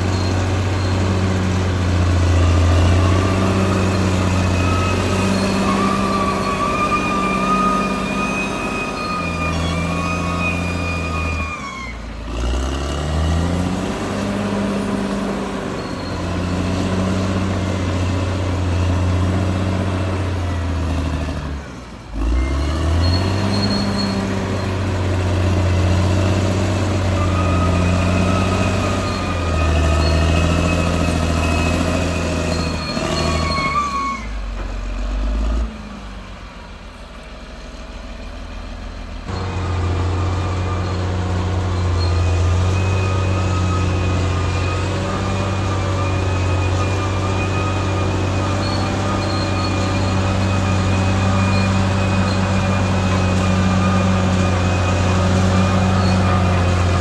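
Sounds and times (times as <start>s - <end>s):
bulldozer diesel engine running: 0.0s - 57.0s.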